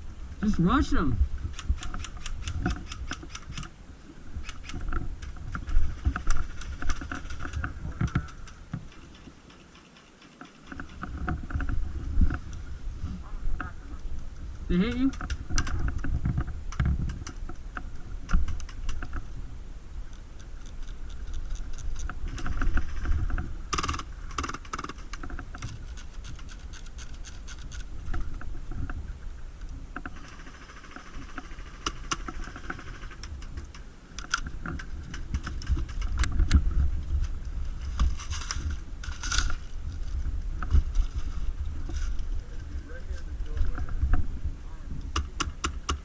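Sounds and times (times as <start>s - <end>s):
wind on microphone: 0.0s - 9.5s, 10.6s - 46.0s
microphone handling noise: 10.6s - 30.2s, 32.0s - 46.0s.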